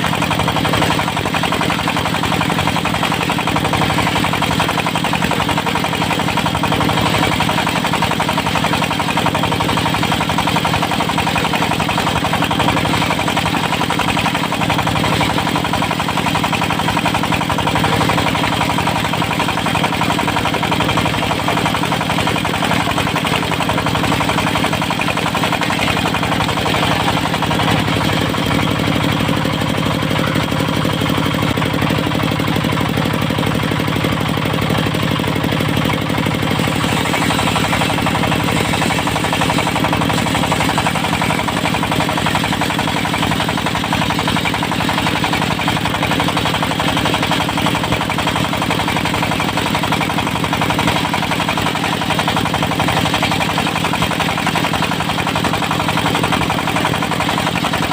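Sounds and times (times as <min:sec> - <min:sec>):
diesel engine chugging: 0:00.0 - 0:57.9.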